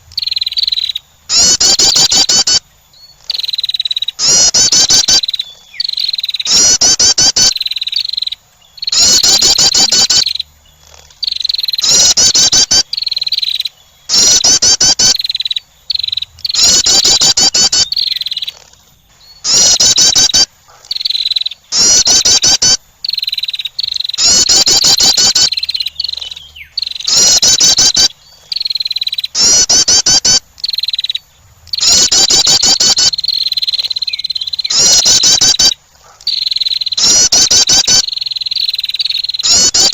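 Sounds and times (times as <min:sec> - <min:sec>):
songbird trilling: 0:00.0 - 0:39.9.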